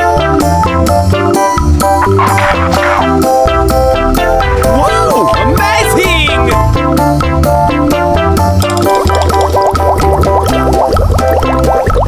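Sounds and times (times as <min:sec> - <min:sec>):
upbeat music with plucked guitar: 0:00.0 - 0:12.0.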